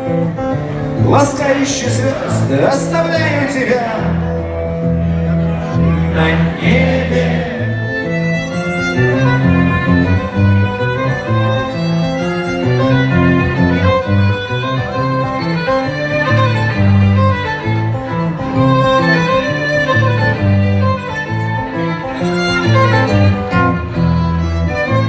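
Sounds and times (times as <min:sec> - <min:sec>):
bass and guitar: 0:00.0 - 0:25.0
violin melody: 0:00.0 - 0:25.0.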